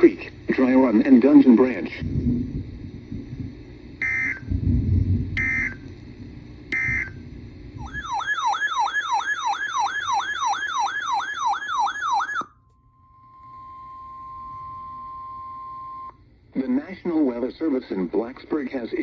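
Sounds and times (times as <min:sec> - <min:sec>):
steady alarm tone: 0:04.0 - 0:04.7, 0:05.4 - 0:05.8, 0:06.7 - 0:07.2, 0:07.8 - 0:16.1
warbling siren-like alert tone: 0:05.4 - 0:05.8, 0:07.8 - 0:12.6
screechy digital data tones: 0:07.8 - 0:12.4.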